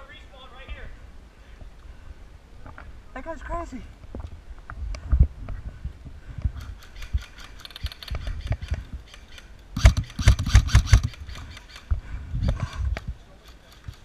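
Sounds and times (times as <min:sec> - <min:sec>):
sharp clicks and knocks: 0:06.4 - 0:14.0.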